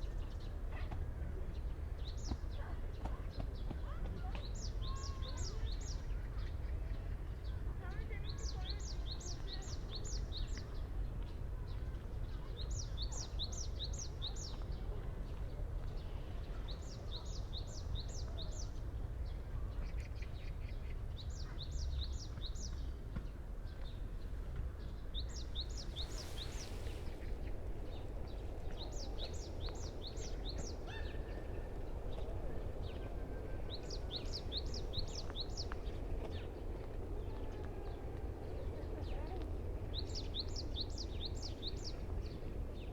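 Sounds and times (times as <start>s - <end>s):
songbird singing: 23.7s - 42.9s.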